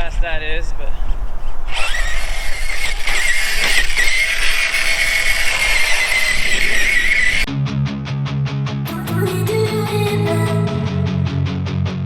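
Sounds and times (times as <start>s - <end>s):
rc car motor whine: 1.7s - 7.5s
guitar music: 5.8s - 12.0s.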